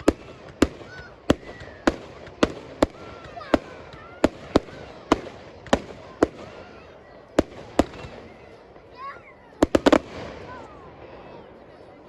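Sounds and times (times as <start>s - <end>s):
fireworks crackle: 0.0s - 6.8s, 7.4s - 8.6s, 9.6s - 10.7s
fireworks bangs: 0.0s - 8.7s, 9.6s - 10.8s.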